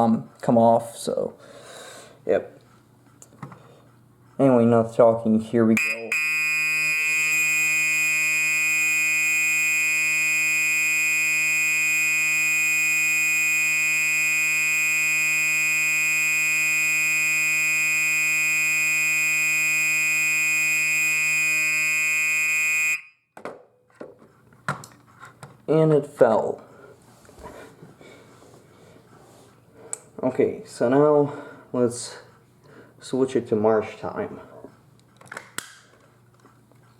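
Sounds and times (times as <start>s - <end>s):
fire alarm horn tone: 5.8s - 23.3s.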